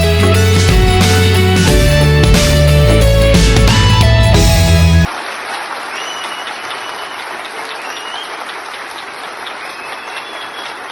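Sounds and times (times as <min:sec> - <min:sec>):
background music: 0:00.0 - 0:05.1
audience applause: 0:04.8 - 0:10.9.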